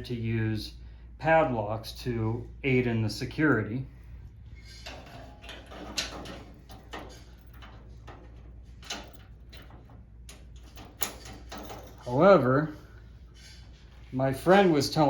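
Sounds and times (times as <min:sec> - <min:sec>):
padlocks clicking and clinking: 0:04.8 - 0:12.4.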